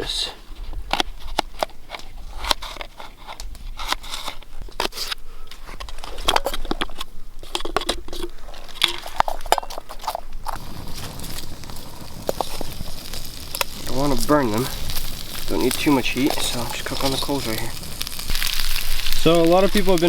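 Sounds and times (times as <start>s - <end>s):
low hiss: 10.3s - 20.0s.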